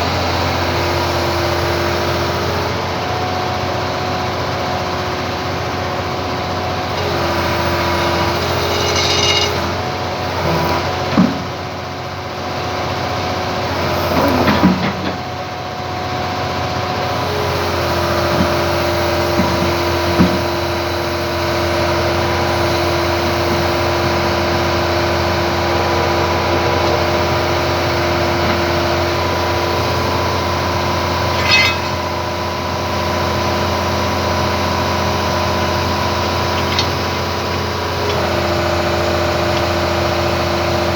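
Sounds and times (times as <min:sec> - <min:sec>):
excavator diesel engine running: 0:00.0 - 0:40.9
metal knocks and clanks: 0:08.6 - 0:09.7, 0:31.3 - 0:32.2.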